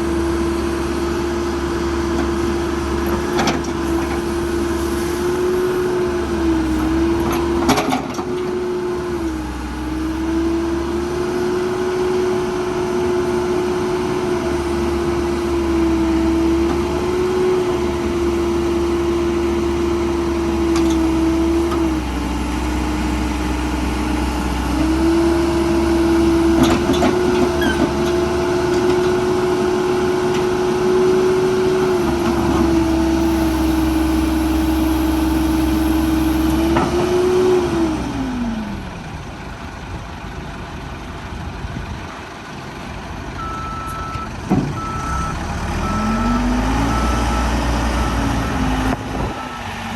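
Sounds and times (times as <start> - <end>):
diesel engine running: 0.0 - 49.9.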